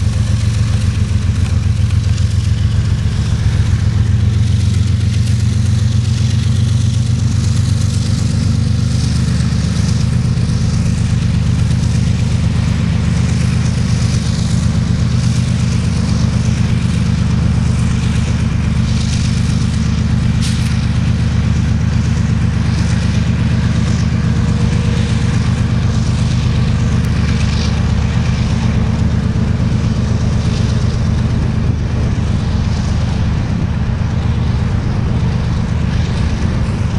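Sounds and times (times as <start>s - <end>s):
diesel engine drone: 0.0s - 36.9s
train wheels rattling on rails: 0.0s - 36.9s.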